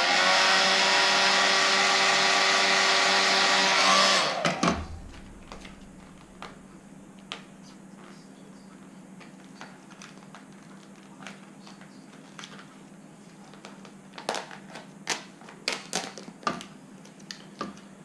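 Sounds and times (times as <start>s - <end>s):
steady low hum: 4.6s - 9.2s
plastic film crinkling and crackling: 9.4s - 16.3s.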